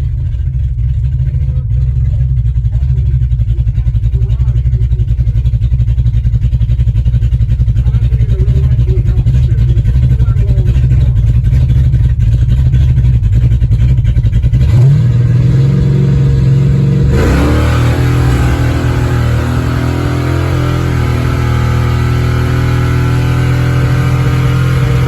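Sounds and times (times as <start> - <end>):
vee eight engine idling lumpily: 0.0 - 25.0
engine revving and accelerating: 14.4 - 25.0.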